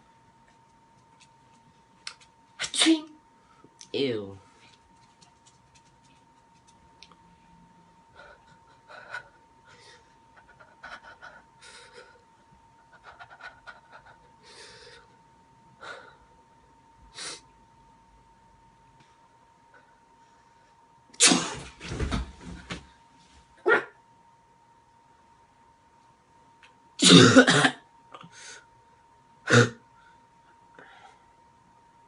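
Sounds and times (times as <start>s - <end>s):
sniffs and panting breaths: 8.1s - 15.2s.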